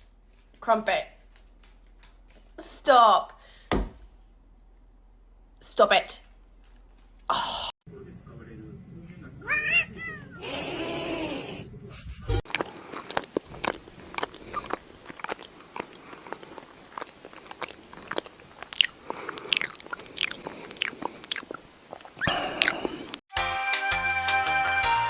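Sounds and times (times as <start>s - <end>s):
pet chewing something hard: 12.3s - 23.2s.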